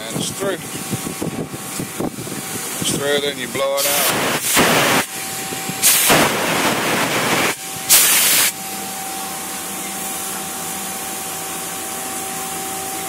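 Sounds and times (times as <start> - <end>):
compressed air blow gun hissing: 1.0 - 8.6.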